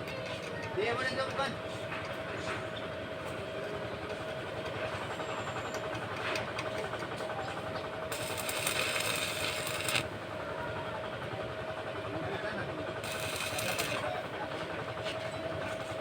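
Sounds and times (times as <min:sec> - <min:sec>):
steady high hum: 0:07.9 - 0:10.4, 0:13.0 - 0:15.0
welding arc crackling: 0:08.1 - 0:10.2, 0:13.0 - 0:14.3.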